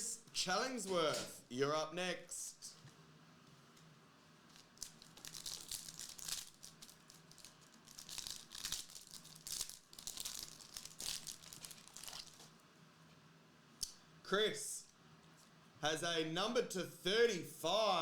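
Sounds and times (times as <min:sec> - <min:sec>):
foil wrapper tearing and crinkling: 0:04.5 - 0:12.5.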